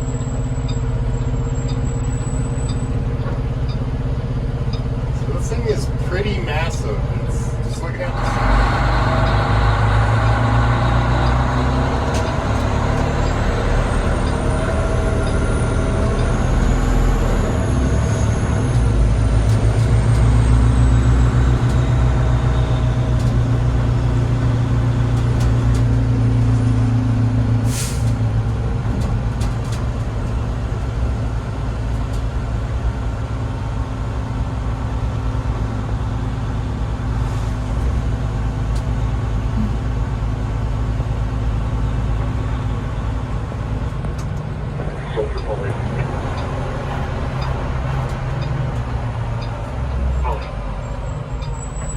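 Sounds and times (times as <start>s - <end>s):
diesel engine running: 0.0s - 51.9s
air-brake hiss: 27.6s - 28.2s.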